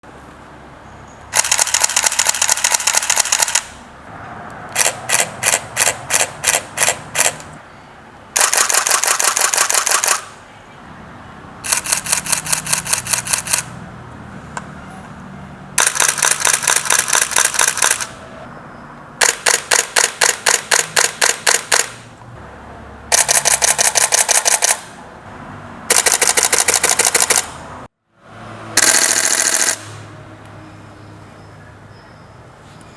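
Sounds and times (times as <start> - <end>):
camera shutter bursts: 1.3 - 3.8, 4.8 - 7.5, 8.4 - 10.4, 11.6 - 13.7, 15.8 - 18.2, 19.2 - 22.0, 23.1 - 24.9, 25.9 - 27.6, 28.8 - 30.0.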